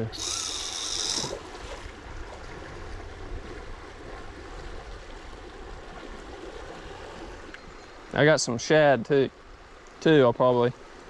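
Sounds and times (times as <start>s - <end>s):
river current rushing: 0.0s - 1.9s.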